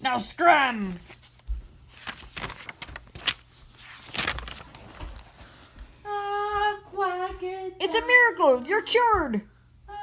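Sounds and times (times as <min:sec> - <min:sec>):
handling noise rustling: 0:01.0 - 0:05.7.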